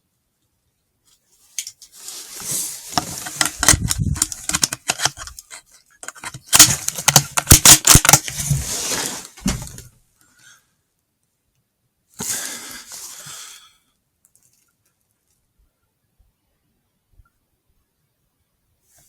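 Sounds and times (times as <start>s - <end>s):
rustling: 1.1s - 9.9s
raccoon dog crunching clicks: 3.2s - 8.4s.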